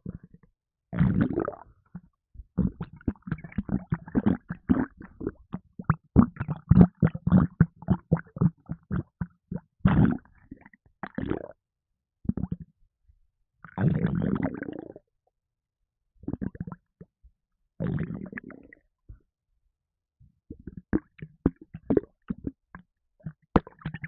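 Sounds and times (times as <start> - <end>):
stomach gurgling: 0.0 - 0.4, 1.0 - 11.6, 12.3 - 12.7, 13.6 - 15.1, 16.2 - 17.1, 17.8 - 18.9, 20.5 - 24.0.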